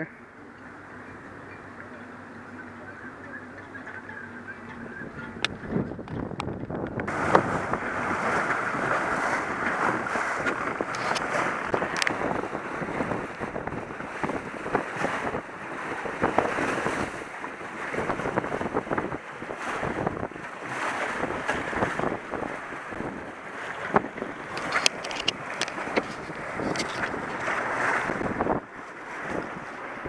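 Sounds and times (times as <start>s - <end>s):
water rushing along hull: 0.0s - 30.0s
wind buffeting microphone: 0.8s - 30.0s.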